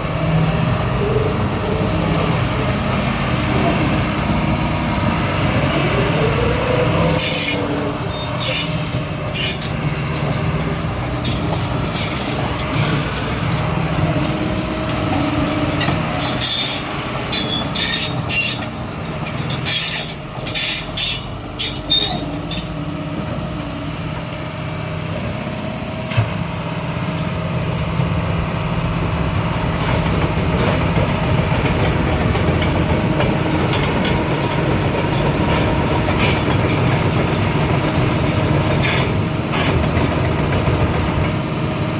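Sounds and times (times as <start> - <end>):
excavator diesel engine: 0.0 - 41.9
metallic clicks and clanks: 7.1 - 22.8, 27.2 - 41.4.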